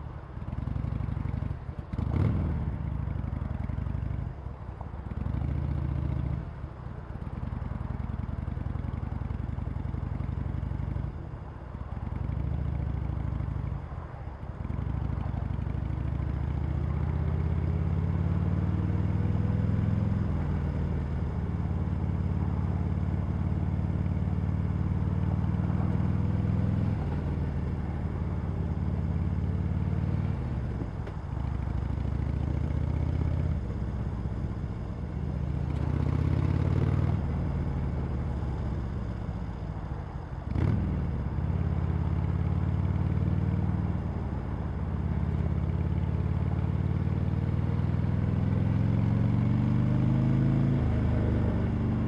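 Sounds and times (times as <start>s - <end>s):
motorcycle engine revving: 35.0s - 38.9s.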